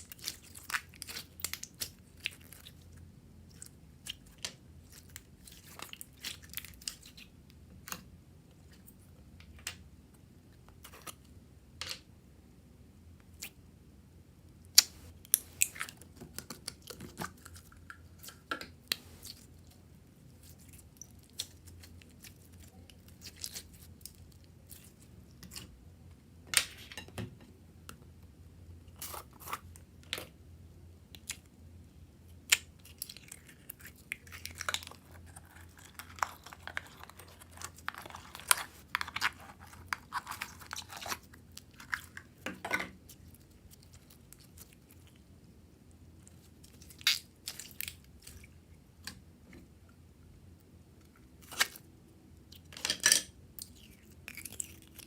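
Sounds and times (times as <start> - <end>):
crunching and chewing: 0.0 - 7.3, 14.8 - 25.7, 32.4 - 48.6, 53.6 - 55.0.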